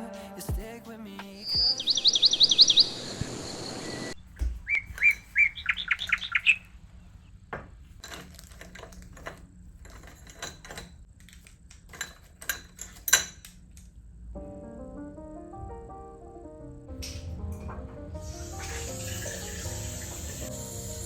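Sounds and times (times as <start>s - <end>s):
bird chirping: 1.2s - 7.4s, 18.2s - 21.0s.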